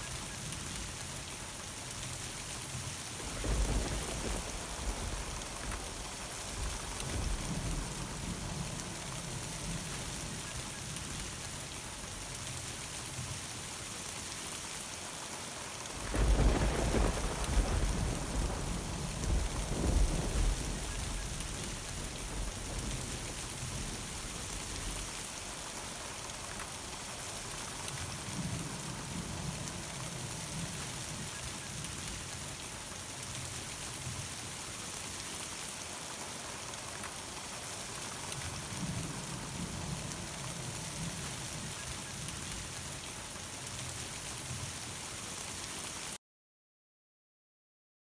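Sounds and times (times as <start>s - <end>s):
heavy rain falling: 0.0s - 46.2s
faint low thunder rumbling: 2.9s - 11.3s, 15.8s - 31.3s.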